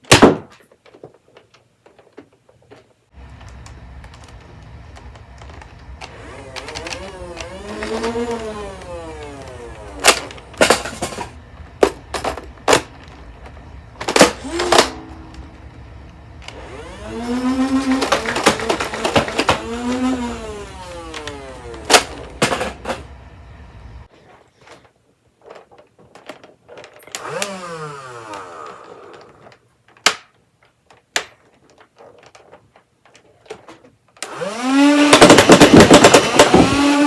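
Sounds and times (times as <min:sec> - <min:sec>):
plastic clicks and clacks: 0:00.0 - 0:15.5, 0:17.4 - 0:23.0, 0:24.6 - 0:27.6, 0:28.3 - 0:34.4
flywheel motor whining: 0:03.2 - 0:24.1, 0:26.7 - 0:29.6, 0:34.2 - 0:37.0.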